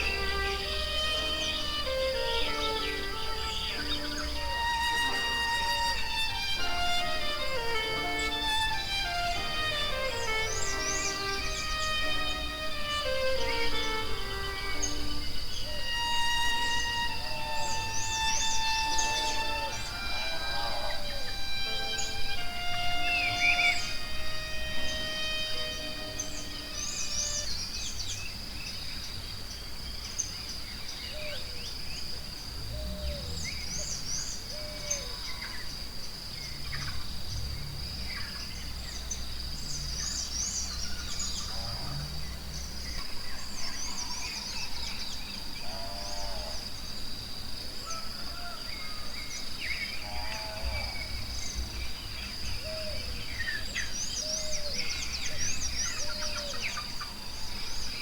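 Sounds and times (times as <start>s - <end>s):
birds chirping and calling: 0.0s - 28.2s, 48.3s - 58.0s
high insect drone: 0.0s - 58.0s.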